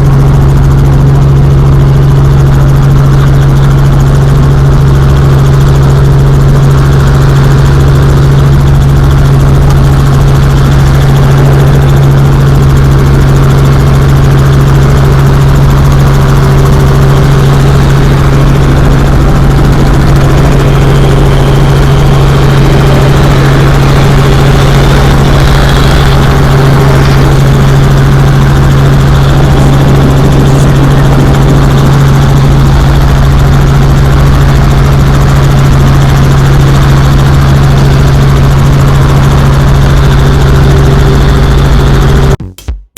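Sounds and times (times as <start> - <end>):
helicopter engine and rotor hum: 0.0 - 42.4.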